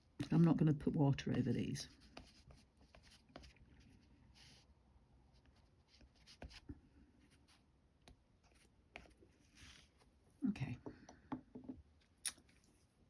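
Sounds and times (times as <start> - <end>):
crayon scratching on paper: 1.9 - 3.5.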